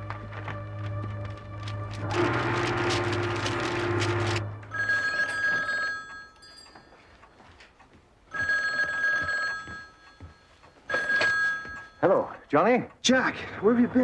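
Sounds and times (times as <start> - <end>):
telephone ringing: 2.1 - 7.6, 8.3 - 12.4.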